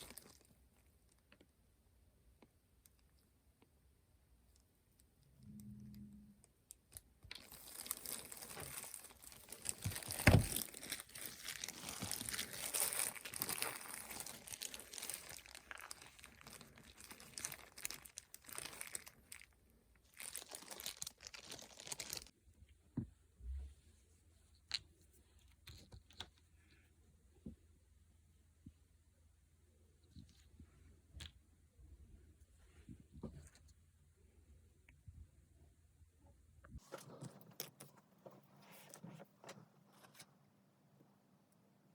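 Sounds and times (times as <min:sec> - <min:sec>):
lead sheet crinkling and tearing: 0:07.3 - 0:22.3.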